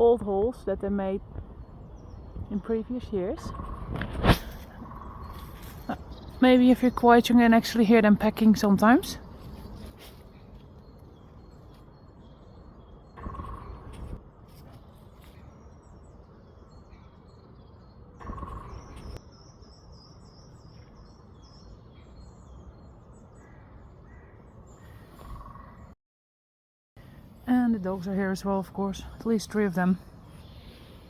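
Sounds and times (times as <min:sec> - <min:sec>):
small birds chirping: 0:00.0 - 0:26.0, 0:27.0 - 0:31.0
loud bird calls: 0:09.2 - 0:14.2, 0:16.8 - 0:26.0.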